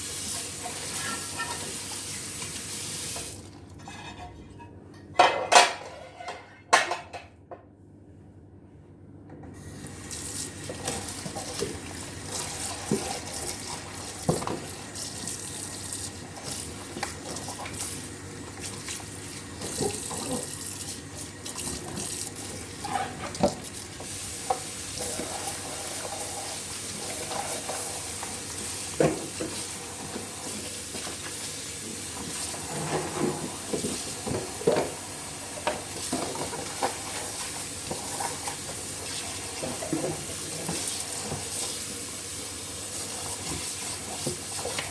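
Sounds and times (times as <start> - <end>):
tap water running into sink: 0.0 - 3.6, 9.8 - 44.9
dishes clinking: 3.8 - 7.3.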